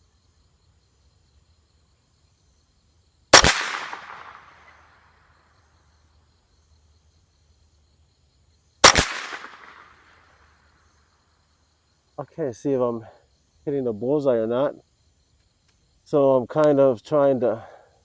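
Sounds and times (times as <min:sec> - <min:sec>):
rifle shots with echo: 0:03.3 - 0:04.9, 0:08.8 - 0:10.1.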